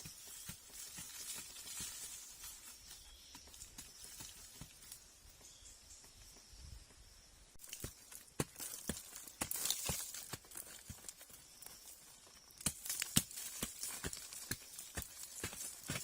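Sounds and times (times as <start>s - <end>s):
dry rustling and crackling: 7.6s - 16.0s.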